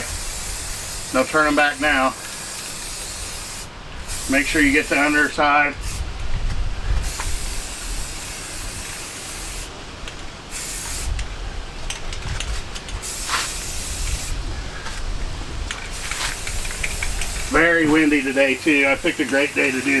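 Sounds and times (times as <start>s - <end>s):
spray paint can hissing: 0.0s - 6.1s, 7.0s - 9.7s, 10.5s - 11.2s, 13.0s - 15.0s, 15.7s - 20.0s
wind rumble on microphone: 5.6s - 8.9s, 11.0s - 18.1s.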